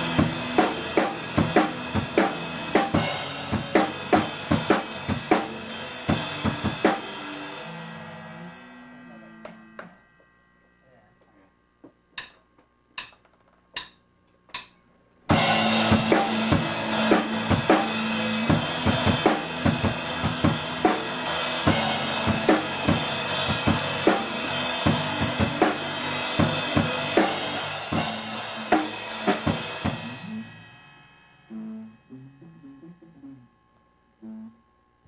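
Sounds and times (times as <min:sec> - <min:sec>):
blues-rock band playing: 0:00.0 - 0:07.8, 0:15.3 - 0:30.6
drumstick clicks: 0:12.2 - 0:14.8.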